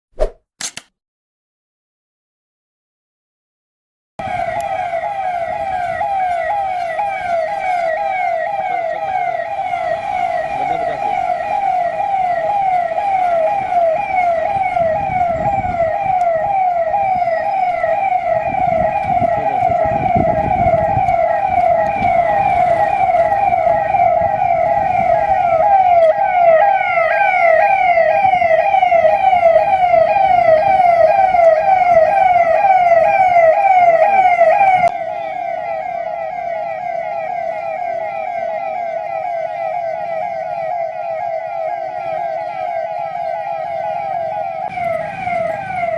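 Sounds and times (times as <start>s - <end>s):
police siren yelp: 4.2s - 45.9s.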